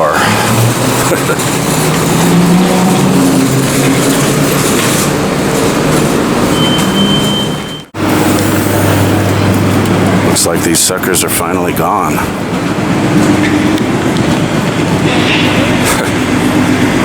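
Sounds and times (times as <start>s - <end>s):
low engine hum: 0.0s - 17.0s
street traffic: 0.0s - 17.0s.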